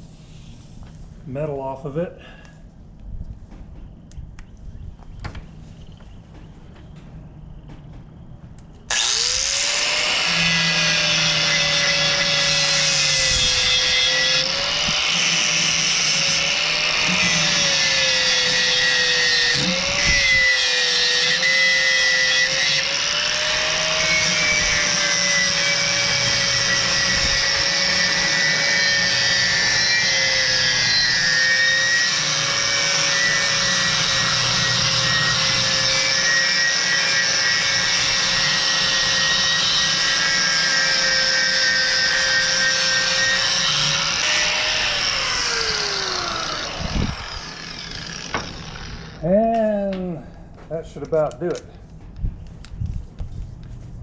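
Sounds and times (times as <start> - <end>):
angle grinder grinding steel: 8.9 - 49.7.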